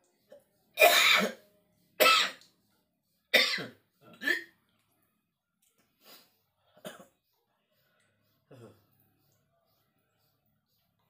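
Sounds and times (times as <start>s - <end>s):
person coughing: 0.8s - 1.4s.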